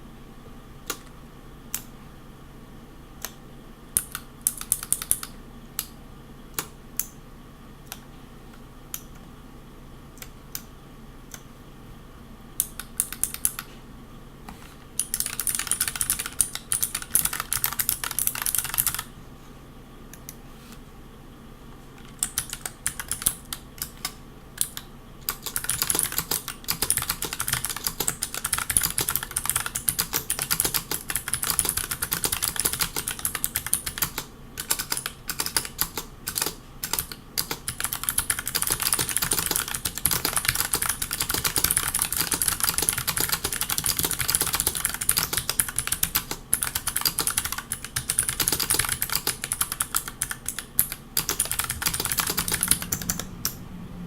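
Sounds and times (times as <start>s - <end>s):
mechanical keyboard typing: 4.0s - 5.9s, 12.6s - 13.7s, 15.0s - 19.1s, 22.0s - 53.6s.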